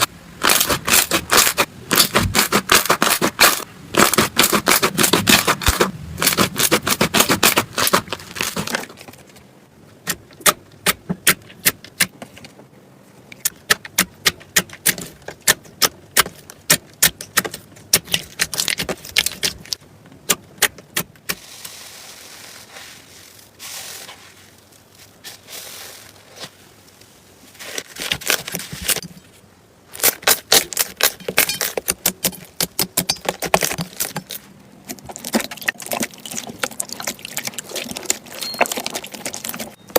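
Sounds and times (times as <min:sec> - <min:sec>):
slime clicking and crackling: 0:00.0 - 0:08.9, 0:13.4 - 0:21.4, 0:30.0 - 0:39.8
slime squishing: 0:00.0 - 0:09.2, 0:16.2 - 0:19.8, 0:30.0 - 0:39.9.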